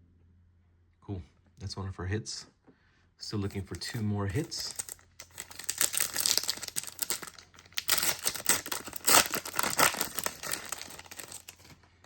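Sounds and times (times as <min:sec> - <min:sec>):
foil wrapper crinkling: 0:03.9 - 0:11.9.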